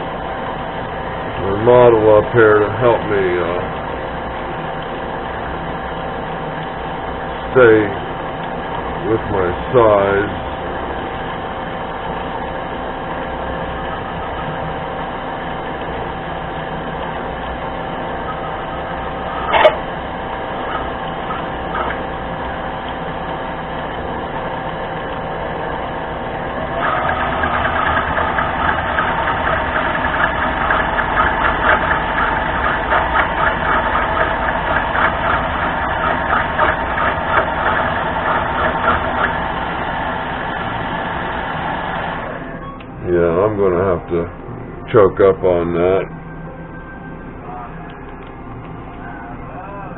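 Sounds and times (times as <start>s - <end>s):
lathe motor and gear whine: 0.0s - 49.9s
rough rhythmic cutting: 26.5s - 41.0s.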